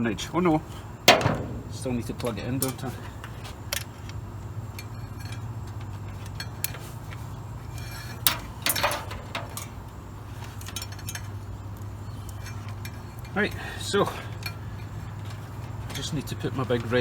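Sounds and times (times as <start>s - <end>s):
low hum: 1.1s - 2.9s.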